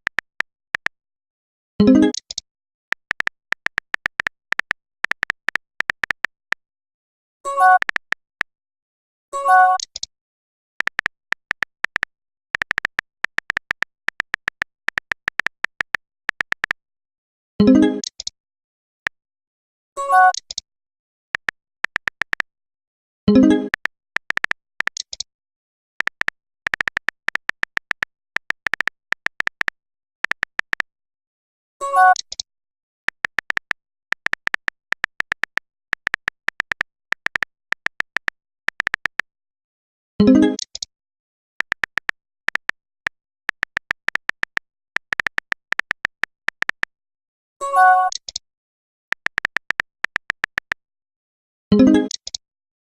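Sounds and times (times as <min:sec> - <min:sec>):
phone keyboard typing clicks: 0:00.0 - 0:01.0, 0:01.8 - 0:06.6, 0:07.5 - 0:08.5, 0:09.5 - 0:10.1, 0:10.8 - 0:16.8, 0:17.6 - 0:18.3, 0:20.1 - 0:20.6, 0:21.4 - 0:22.5, 0:23.3 - 0:25.3, 0:26.0 - 0:30.9, 0:31.8 - 0:32.4, 0:33.1 - 0:39.3, 0:40.2 - 0:40.9, 0:41.6 - 0:46.9, 0:47.9 - 0:48.4, 0:49.1 - 0:50.8, 0:51.8 - 0:52.4.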